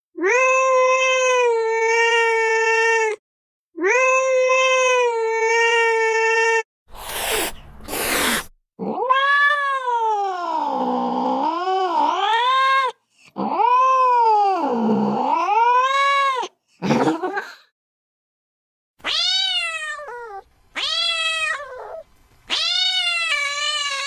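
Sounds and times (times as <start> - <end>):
cat yowling: 0.2 - 3.2, 3.8 - 16.5, 19.0 - 24.0
cat hissing: 6.9 - 8.6.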